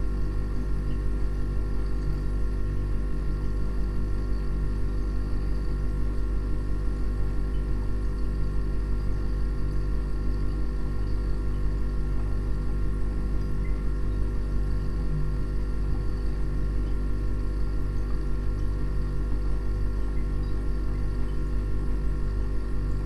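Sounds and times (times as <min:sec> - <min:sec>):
low fluttering drone: 0:14.9 - 0:16.1.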